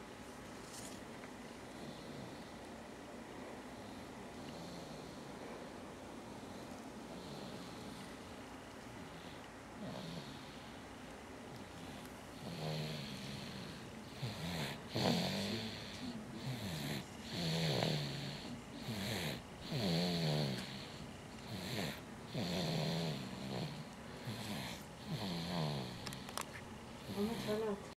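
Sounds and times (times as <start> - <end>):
person snoring: 12.4 - 26.4.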